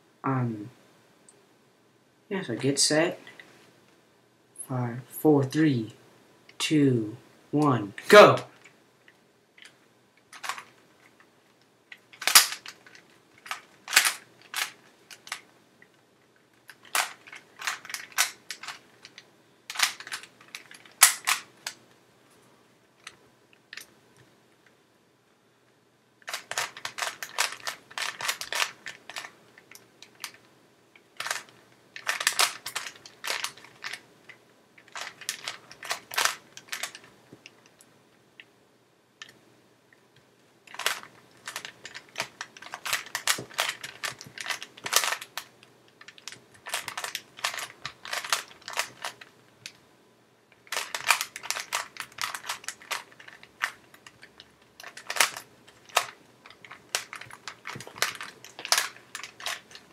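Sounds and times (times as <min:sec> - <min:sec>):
puzzle cube plastic clicking: 0:08.0 - 0:11.3, 0:11.9 - 0:16.0, 0:16.6 - 0:21.8, 0:26.2 - 0:38.5, 0:40.7 - 0:49.8, 0:50.6 - 0:59.9.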